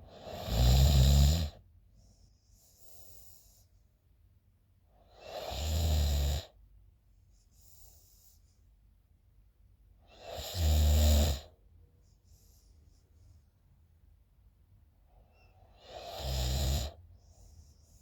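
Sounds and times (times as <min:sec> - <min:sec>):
girl snoring loudly: 0:00.1 - 0:01.6, 0:05.2 - 0:06.5, 0:10.2 - 0:11.5, 0:15.8 - 0:17.0
soft breathing: 0:01.9 - 0:04.0, 0:07.2 - 0:08.8, 0:11.9 - 0:13.8, 0:17.0 - 0:18.0.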